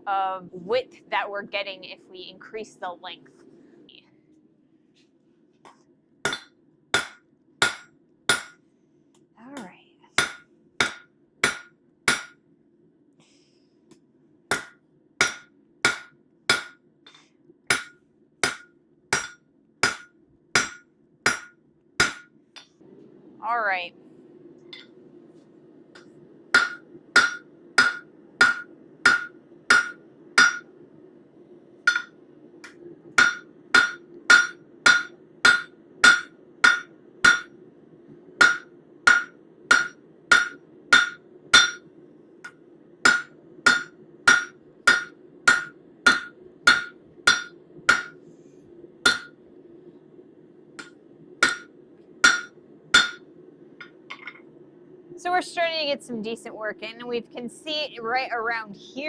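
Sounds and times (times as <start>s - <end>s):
steady low hum: 0.0s - 59.0s
hammer striking metal on anvil: 6.3s - 8.6s, 10.2s - 12.4s, 14.5s - 16.8s, 17.7s - 22.3s, 26.0s - 30.7s, 31.9s - 37.5s, 38.4s - 41.9s, 43.0s - 48.2s, 49.1s - 49.3s, 50.8s - 53.2s.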